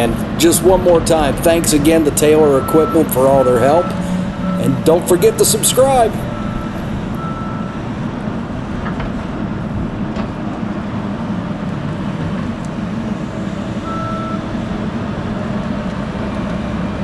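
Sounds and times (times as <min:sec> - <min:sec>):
skid steer engine running: 0:00.0 - 0:17.0
back-up alarm beep: 0:02.2 - 0:07.8, 0:13.8 - 0:14.5.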